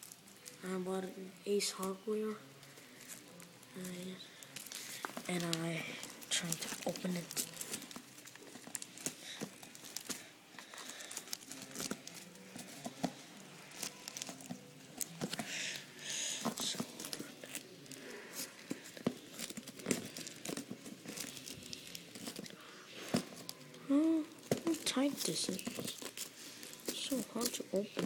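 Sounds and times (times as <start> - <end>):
packaging crinkling and scraping: 2.6 - 28.0
packaging tearing: 4.4 - 22.5.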